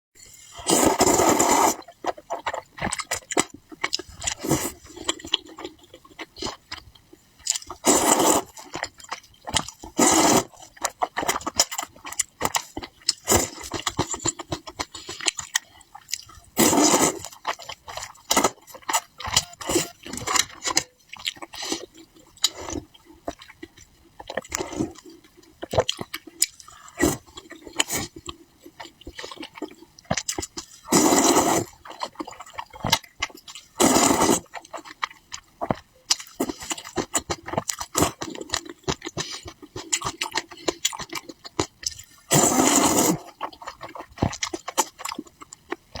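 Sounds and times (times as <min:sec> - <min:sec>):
wet chewing and mouth smacking: 0:01.8 - 0:33.7, 0:34.4 - 0:46.0.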